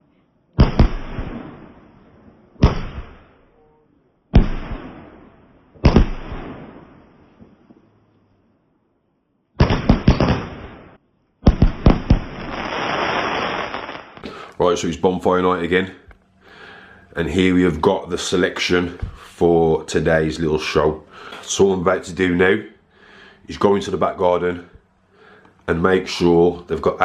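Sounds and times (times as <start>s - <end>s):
fireworks bangs: 0.6s - 2.0s, 4.4s - 7.6s, 9.6s - 14.3s
fireworks crackling: 9.6s - 14.4s.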